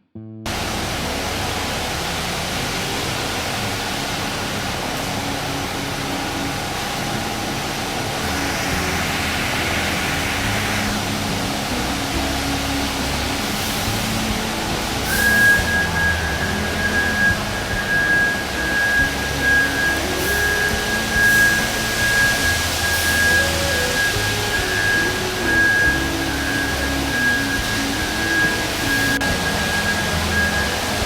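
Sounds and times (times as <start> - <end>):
engine running: 0.5 - 31.0
loud even hiss: 0.5 - 31.0.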